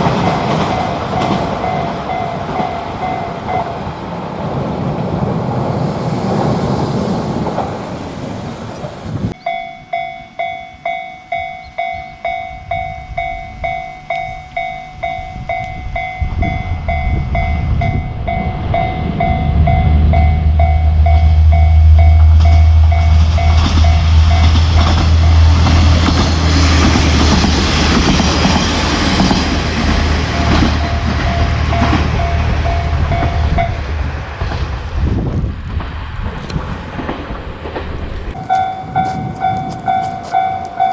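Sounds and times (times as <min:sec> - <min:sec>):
level crossing bell ringing: 0:00.0 - 0:03.7, 0:09.4 - 0:25.4, 0:30.3 - 0:33.8, 0:38.4 - 0:40.9
diesel train passing: 0:00.0 - 0:40.9.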